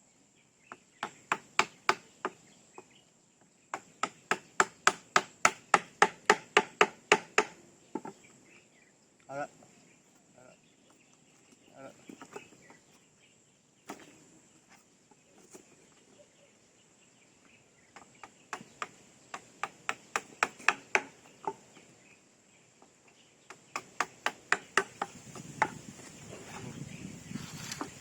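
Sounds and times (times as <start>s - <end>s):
hammer striking wood: 0.7s - 2.4s, 3.7s - 8.1s, 18.0s - 21.6s, 23.7s - 25.8s.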